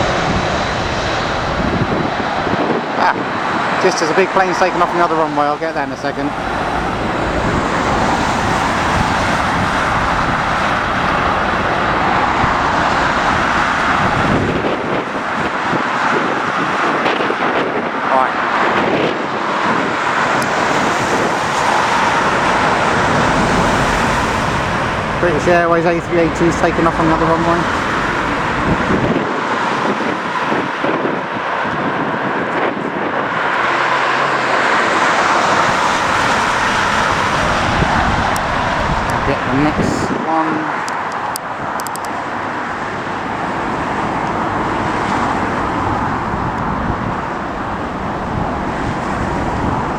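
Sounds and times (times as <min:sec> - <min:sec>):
jet engine roar: 0:00.0 - 0:49.9
wind buffeting microphone: 0:00.0 - 0:49.9.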